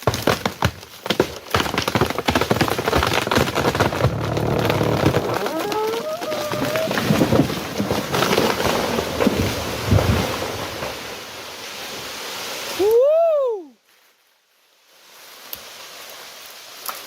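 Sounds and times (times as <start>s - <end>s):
tree crashing through branches: 0.0s - 12.7s.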